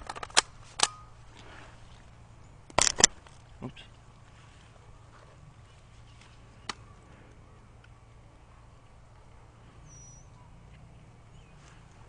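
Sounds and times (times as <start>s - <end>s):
faint low rumble: 0.0s - 12.0s.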